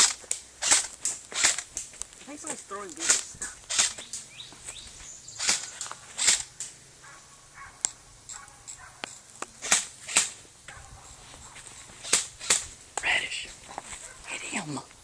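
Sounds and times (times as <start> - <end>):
airsoft gun shots: 0.0 - 1.7, 3.0 - 4.1, 5.4 - 6.5, 9.6 - 10.4, 12.0 - 12.7.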